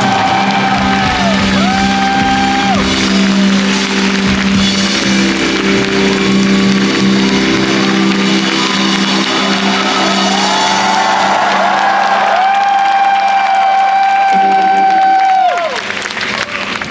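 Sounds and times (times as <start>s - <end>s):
low bass: 0.0s - 11.7s
live band holding a chord: 0.0s - 15.6s.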